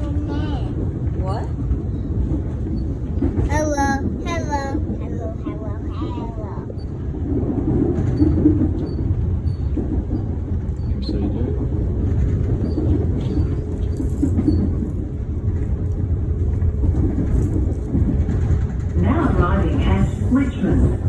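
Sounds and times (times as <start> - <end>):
train rumbling: 0.0 - 21.0.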